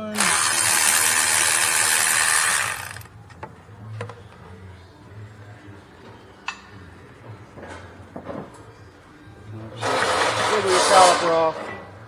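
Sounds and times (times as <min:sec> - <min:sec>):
electric ratchet whirring: 0:00.0 - 0:03.1.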